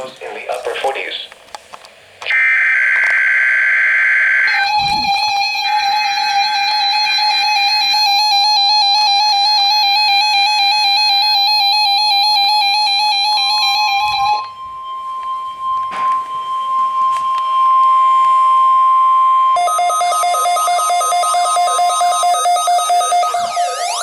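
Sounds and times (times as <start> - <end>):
high alarm tone: 2.3 - 24.0
two-tone attention signal: 4.5 - 7.1.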